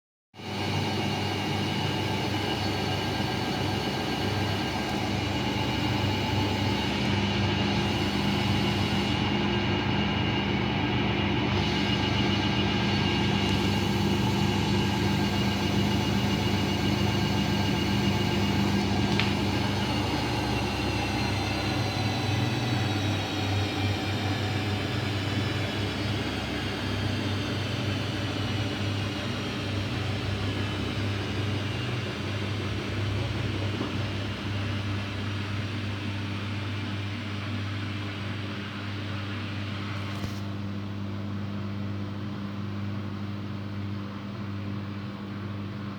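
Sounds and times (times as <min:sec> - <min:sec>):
washing machine spinning: 0:00.4 - 0:45.9
low hum: 0:00.6 - 0:35.4.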